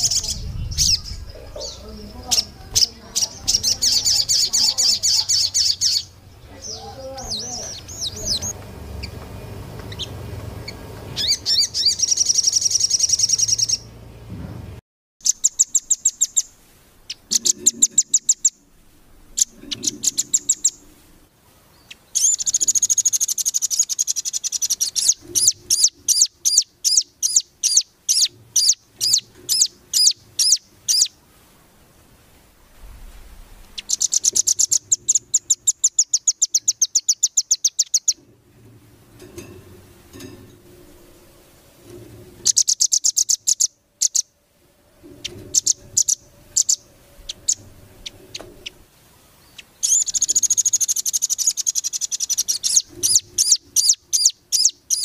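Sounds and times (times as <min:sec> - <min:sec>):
dense bird trill: 0:00.0 - 0:09.2, 0:09.9 - 0:14.0, 0:15.2 - 0:20.9, 0:21.8 - 0:31.2, 0:33.7 - 0:38.3, 0:42.4 - 0:44.4, 0:45.0 - 0:55.0
songbirds high-pitched notes: 0:00.0 - 0:14.0, 0:15.2 - 0:18.6, 0:21.6 - 0:31.2, 0:33.8 - 0:38.3, 0:42.4 - 0:44.4, 0:45.1 - 0:55.0.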